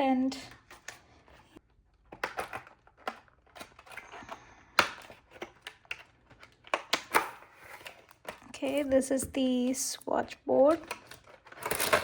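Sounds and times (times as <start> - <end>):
packaging rustling: 10.6 - 12.0.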